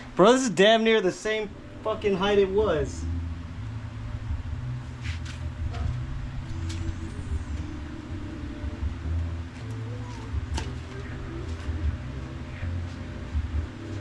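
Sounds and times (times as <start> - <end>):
faint steady hum: 0.0 - 14.0
vehicle engine rumbling: 1.2 - 14.0.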